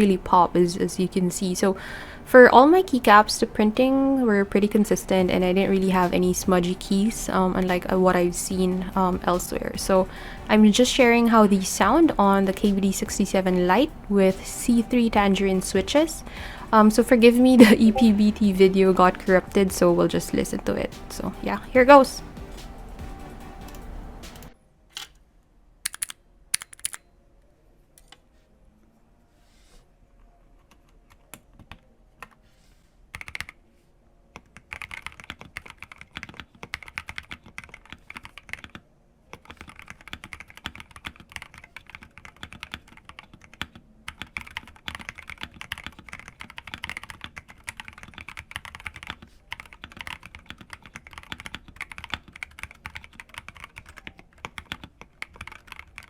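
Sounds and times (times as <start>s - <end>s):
mechanical keyboard typing: 25.9s - 27.0s, 33.1s - 33.6s, 34.4s - 38.8s, 39.4s - 56.0s.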